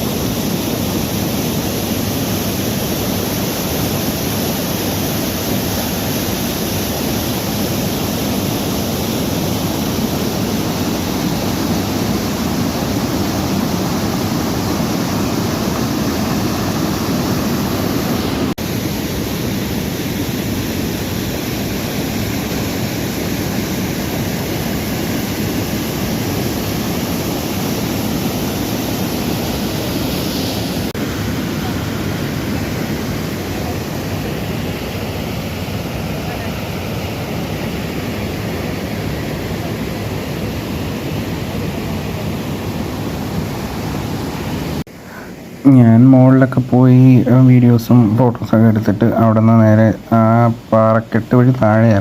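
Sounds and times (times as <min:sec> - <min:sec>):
waterfall and rapids rushing: 0:00.0 - 0:52.0.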